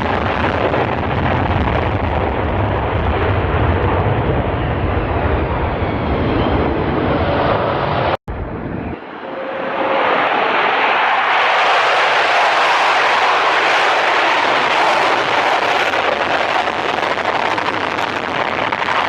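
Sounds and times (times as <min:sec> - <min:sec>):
fighter jet engines roaring: 0:00.0 - 0:19.0.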